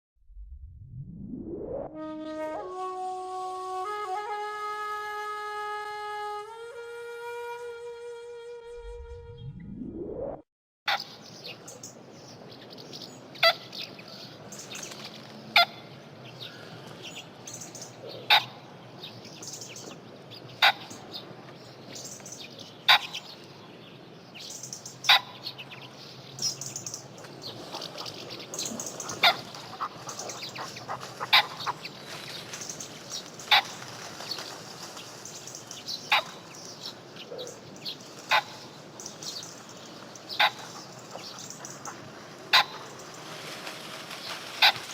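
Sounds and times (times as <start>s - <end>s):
faint background ambience: 11.0s - 44.9s
pheasant cackling calls: 18.2s - 18.6s, 22.9s - 23.3s, 27.5s - 32.8s, 33.4s - 34.2s, 35.8s - 37.5s, 38.2s - 39.4s, 40.2s - 43.6s.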